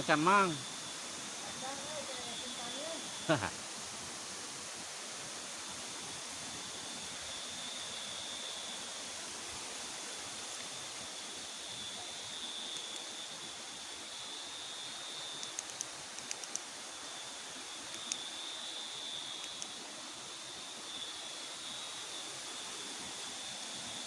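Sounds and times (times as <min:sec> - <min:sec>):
river water running: 0:00.0 - 0:24.0
sharp ticks: 0:15.4 - 0:16.7, 0:17.9 - 0:18.3, 0:19.4 - 0:19.8.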